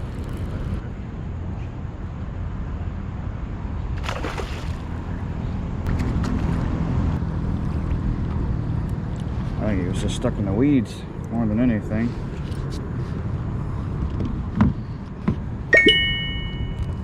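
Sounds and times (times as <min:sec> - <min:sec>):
wind rumbling on microphone: 0:00.0 - 0:01.0
water sloshing around kayak: 0:04.0 - 0:05.0.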